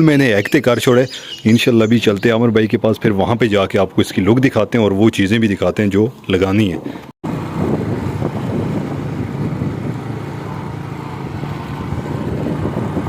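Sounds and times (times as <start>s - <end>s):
wind rushing over microphone: 6.7s - 13.0s
motorcycle engine running: 7.3s - 13.0s.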